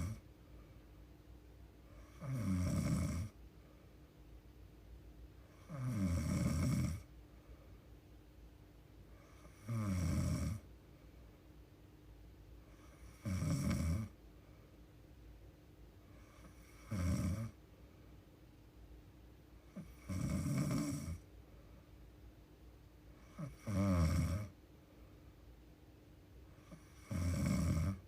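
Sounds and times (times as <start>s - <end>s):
woman snoring: 0.0s - 0.2s, 2.0s - 3.4s, 5.5s - 7.1s, 9.2s - 10.6s, 12.8s - 14.2s, 16.2s - 17.6s, 19.8s - 21.2s, 23.2s - 24.5s, 26.6s - 28.0s.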